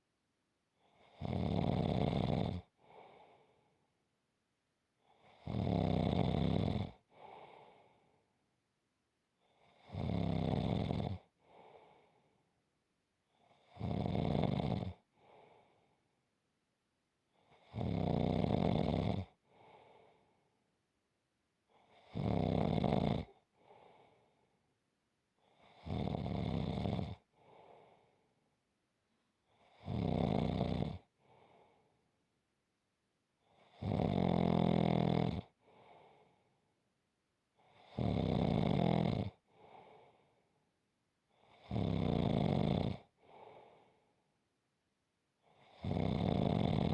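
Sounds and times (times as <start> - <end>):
person snoring: 0.9 - 3.4, 5.2 - 8.0, 9.6 - 11.3, 13.5 - 15.0, 17.5 - 20.2, 21.8 - 23.4, 25.6 - 27.2, 29.6 - 31.7, 33.6 - 35.5, 37.7 - 40.2, 41.4 - 44.0, 45.5 - 46.9.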